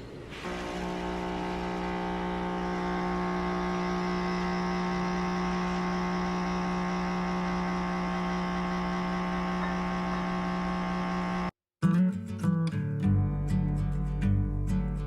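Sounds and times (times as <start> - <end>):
coffee machine humming: 0.0 - 11.5.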